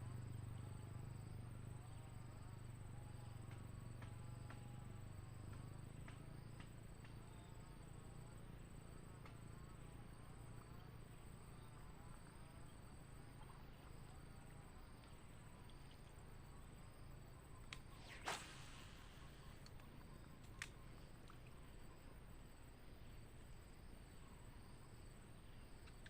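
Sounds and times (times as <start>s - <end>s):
insect chorus drone: 0.0s - 26.0s
low hum: 0.0s - 26.0s
insect trill pulsing: 0.1s - 26.0s
faint ticks: 3.0s - 22.1s, 25.6s - 26.0s.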